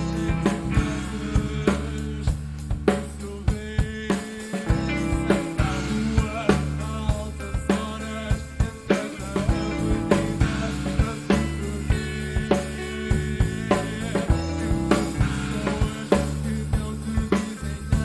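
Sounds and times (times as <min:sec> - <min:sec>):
held chords: 0:00.0 - 0:03.9, 0:04.5 - 0:18.0
bass line: 0:00.0 - 0:18.0
drum kit: 0:00.0 - 0:18.0.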